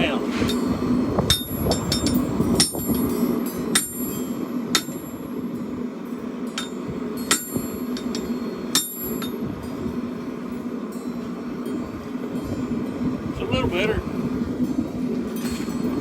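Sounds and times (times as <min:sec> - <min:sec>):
steady low hum: 0:00.0 - 0:16.0
hammer ringing on steel: 0:00.5 - 0:05.2, 0:06.5 - 0:09.4.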